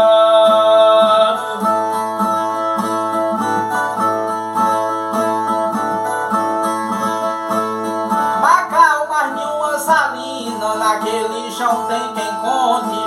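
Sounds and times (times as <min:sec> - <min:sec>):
ten-string viola strummed and plucked: 0:00.0 - 0:13.0.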